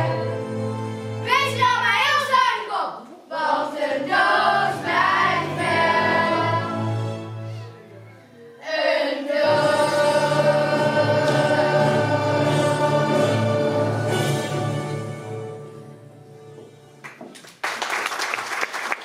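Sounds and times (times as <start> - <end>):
children's choir singing: 3.2 - 7.3, 8.6 - 15.3.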